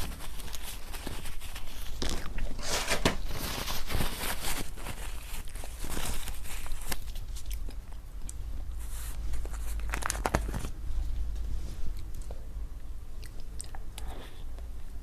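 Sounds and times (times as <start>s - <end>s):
steady low hum: 0.0s - 15.0s
chewing and crunching: 4.9s - 8.4s, 13.2s - 14.7s.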